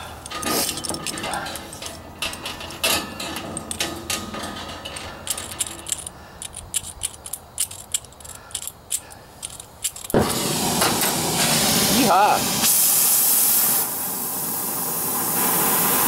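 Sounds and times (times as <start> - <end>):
light metallic clicks and clinks: 0.2 - 10.2.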